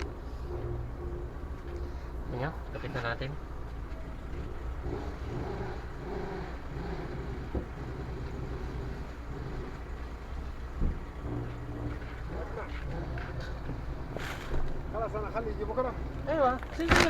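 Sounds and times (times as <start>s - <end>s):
vehicle engine rumbling: 0.0s - 17.0s
short knocks: 10.7s - 11.9s.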